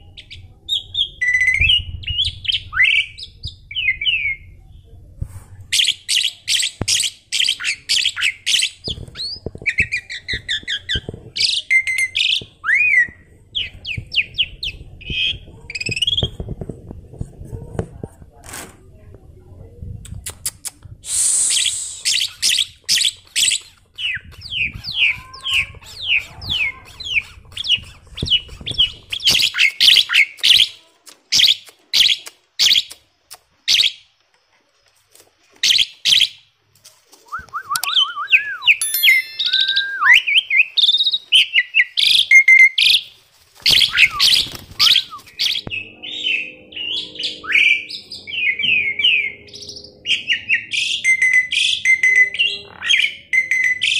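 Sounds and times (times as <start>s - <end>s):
bird whistled notes: 37.4s - 41.2s.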